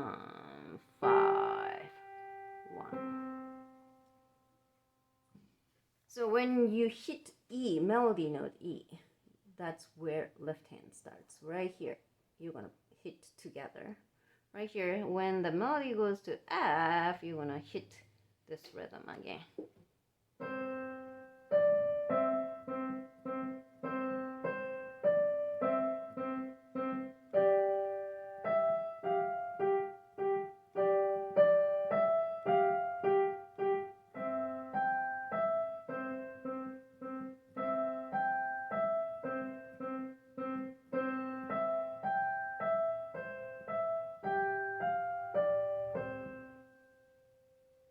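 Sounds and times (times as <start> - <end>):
piano melody with chords: 0.0 - 4.3, 20.4 - 47.9.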